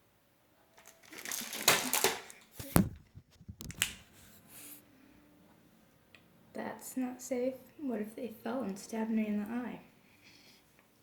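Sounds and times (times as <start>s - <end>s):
rustling and scraping: 2.5s - 4.8s.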